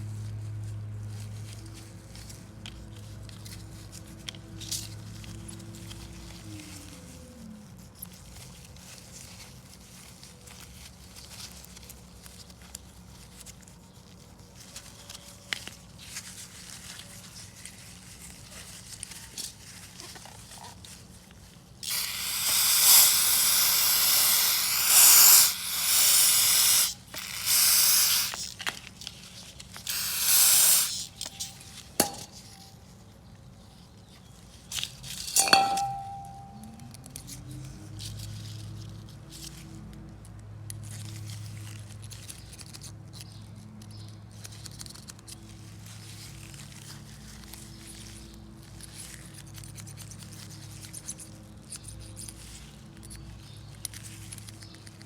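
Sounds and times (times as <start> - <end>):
pressurized spray hissing: 21.8 - 28.6, 29.8 - 32.4.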